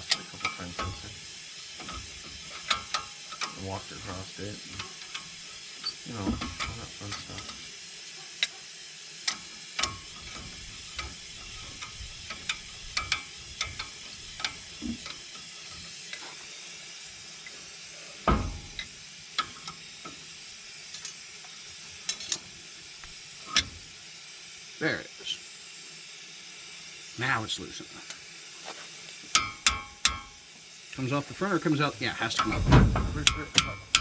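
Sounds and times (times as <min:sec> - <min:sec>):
steady hiss: 0:00.0 - 0:34.0
metallic clicks of hand tools: 0:01.8 - 0:03.6, 0:09.2 - 0:16.2, 0:22.1 - 0:22.5, 0:29.2 - 0:30.4, 0:32.4 - 0:34.0.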